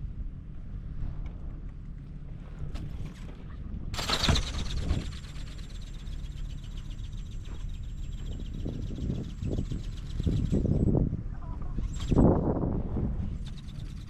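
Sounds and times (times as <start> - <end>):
wind buffeting microphone: 0.0 - 14.0
small motor high whine: 3.9 - 14.0.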